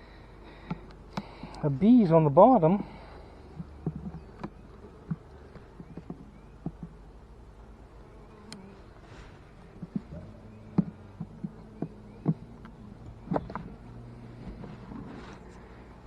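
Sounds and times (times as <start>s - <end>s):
bees buzzing: 0.0s - 16.0s
sharp clicks and knocks: 3.5s - 7.0s, 9.7s - 13.8s.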